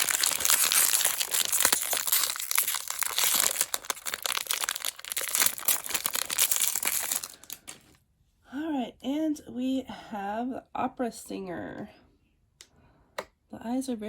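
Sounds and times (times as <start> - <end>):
packaging being crumpled: 0.0 - 8.0.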